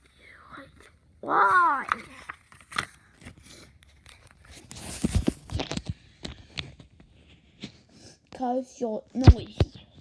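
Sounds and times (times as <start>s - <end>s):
rustling handling noise: 0.6s - 8.2s.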